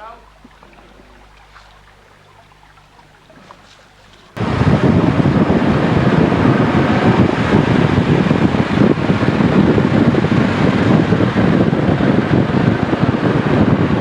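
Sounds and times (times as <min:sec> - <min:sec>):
vehicle rumbling: 0:04.4 - 0:14.0.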